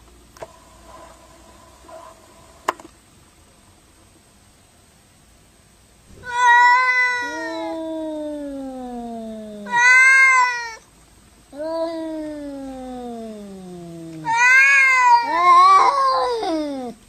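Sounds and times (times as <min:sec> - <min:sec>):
cat meowing: 0:06.2 - 0:10.8, 0:11.6 - 0:17.0.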